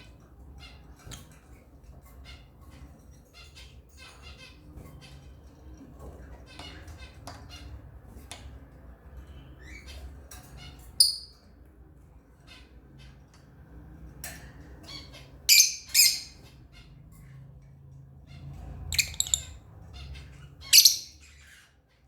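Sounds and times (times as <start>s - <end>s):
lovebirds chirping: 14.7s - 17.0s, 18.3s - 22.0s
shrill bird squawk: 20.6s - 21.3s.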